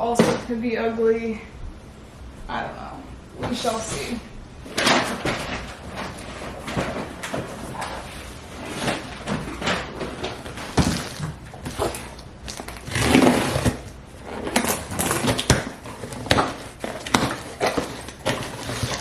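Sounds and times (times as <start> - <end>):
packaging rustling and crinkling: 4.6 - 19.0.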